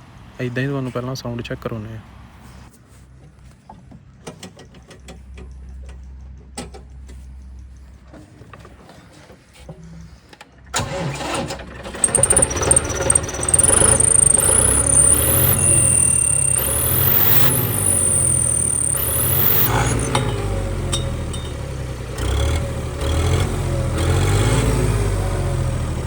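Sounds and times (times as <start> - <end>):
tractor diesel engine running: 10.8 - 26.0.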